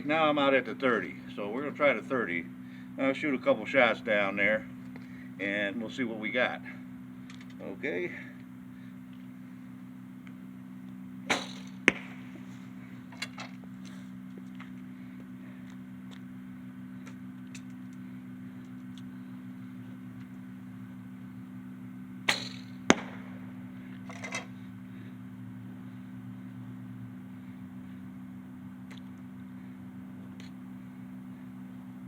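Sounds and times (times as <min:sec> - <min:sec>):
arrow striking target: 0:11.3 - 0:12.5, 0:22.3 - 0:23.6.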